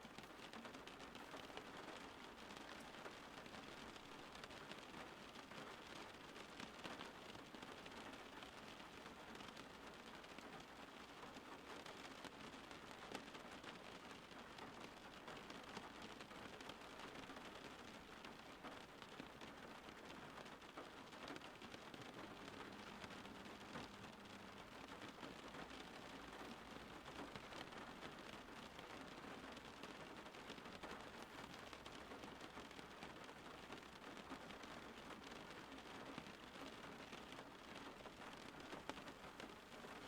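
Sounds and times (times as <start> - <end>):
raindrops ticking: 14.2 - 40.0.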